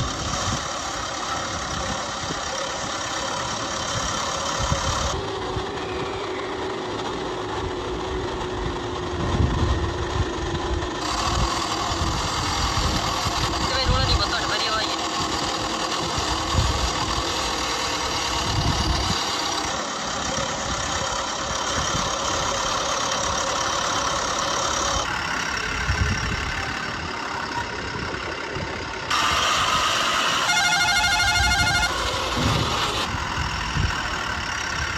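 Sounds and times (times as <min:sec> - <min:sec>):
vehicle engines running: 0:00.0 - 0:34.9
warbling electronic tone: 0:29.1 - 0:33.4.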